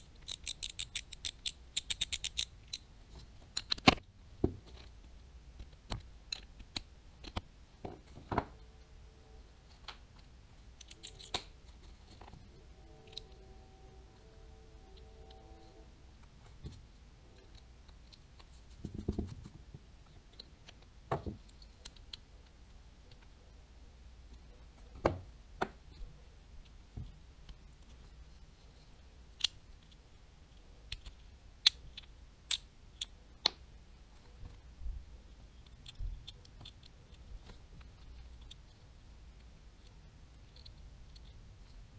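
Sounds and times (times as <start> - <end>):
fishing reel parts clicking: 0.0 - 2.8.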